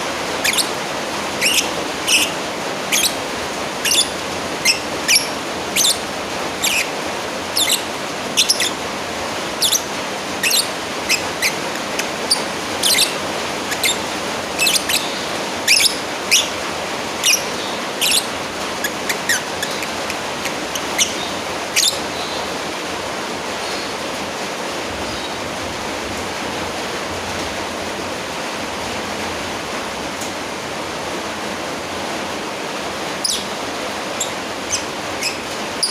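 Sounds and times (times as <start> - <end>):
lovebird chirping: 0.4 - 8.8, 9.4 - 22.5, 33.2 - 35.9.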